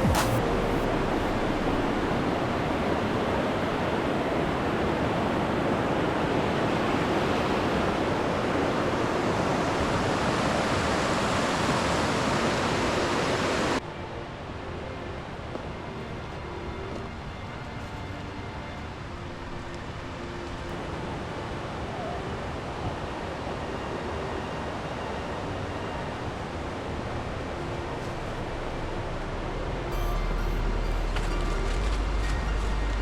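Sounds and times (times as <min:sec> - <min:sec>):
rushing water: 0:00.0 - 0:13.8, 0:14.4 - 0:33.0.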